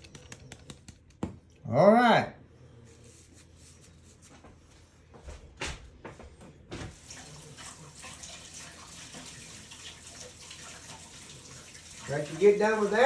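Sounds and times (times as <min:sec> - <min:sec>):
water running from a tap: 0:06.9 - 0:13.0.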